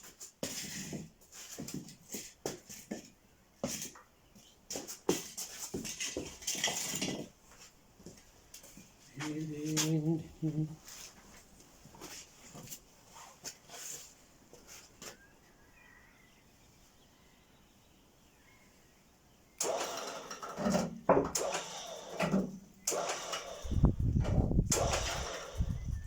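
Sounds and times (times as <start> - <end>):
knocks clatter and scraping: 4.7 - 8.2.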